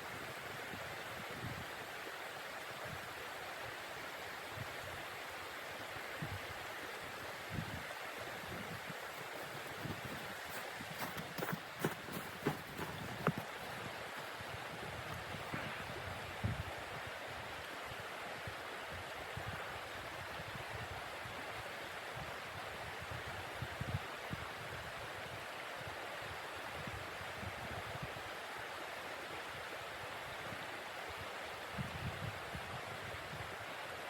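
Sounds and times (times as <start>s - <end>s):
rushing snowstorm wind: 5.9s - 17.5s
wind gusts buffeting microphone: 7.5s - 16.7s.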